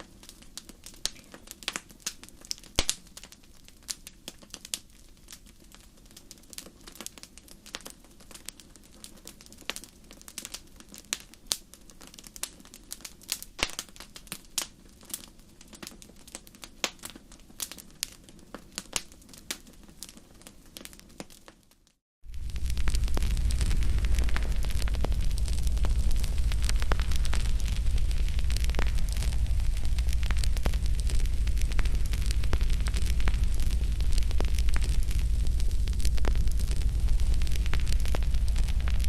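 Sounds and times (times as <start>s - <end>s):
wood fire crackling: 0.0s - 39.0s
loud steady rushing noise: 22.5s - 39.0s.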